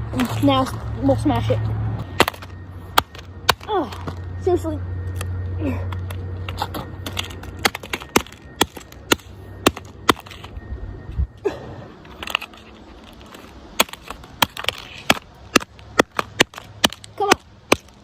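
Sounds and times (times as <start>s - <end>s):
hammer smashing phone: 2.2s - 4.2s, 7.1s - 10.5s.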